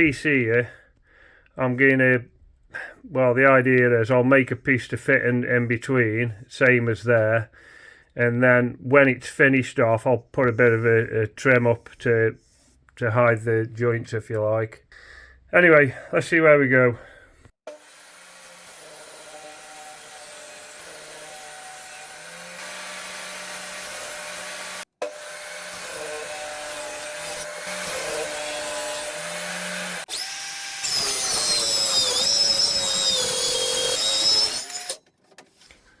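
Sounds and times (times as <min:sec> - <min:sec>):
power saw cutting plywood: 0:17.7 - 0:35.8.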